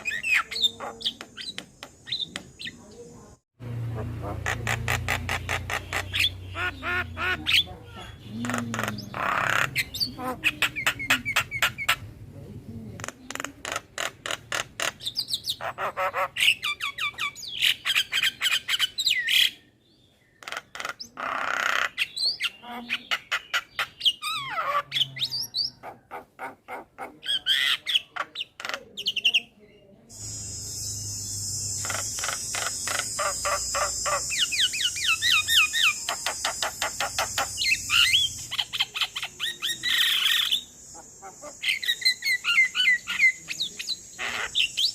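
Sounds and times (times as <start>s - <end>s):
myna calling: 0.0s - 12.1s, 20.4s - 44.9s.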